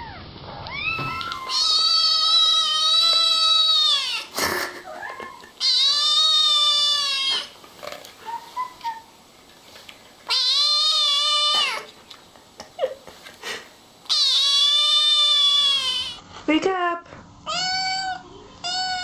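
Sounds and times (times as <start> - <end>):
kitten meowing: 0.0 - 4.3, 5.0 - 7.5, 10.3 - 11.9, 14.1 - 16.2, 17.5 - 19.0.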